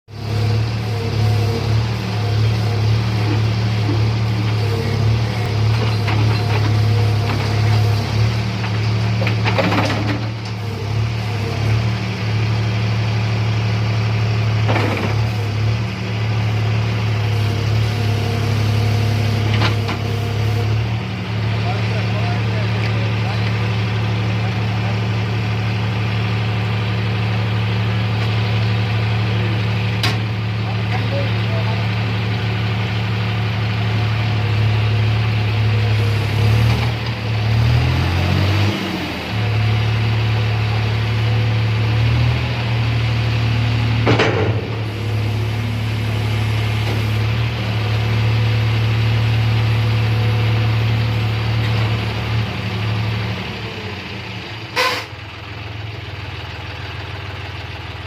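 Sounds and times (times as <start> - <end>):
tractor diesel engine running: 0.1 - 58.0.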